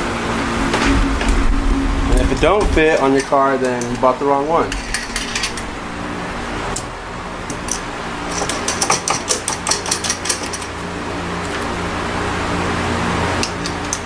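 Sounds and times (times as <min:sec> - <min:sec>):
steady fan hum: 0:00.0 - 0:14.0
hand tools clicking on metal: 0:02.6 - 0:05.7, 0:07.5 - 0:10.8.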